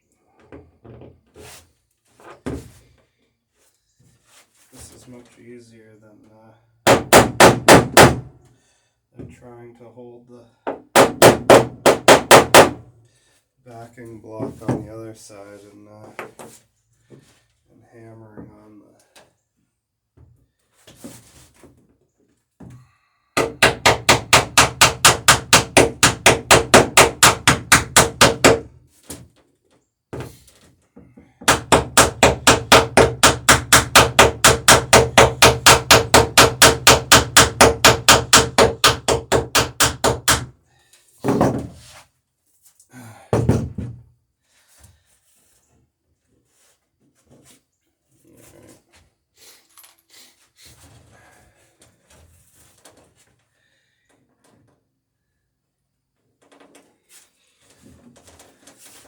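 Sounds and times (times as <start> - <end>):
hammer blows on rivets: 6.9 - 8.3, 10.7 - 12.8, 23.4 - 28.7, 31.1 - 40.5.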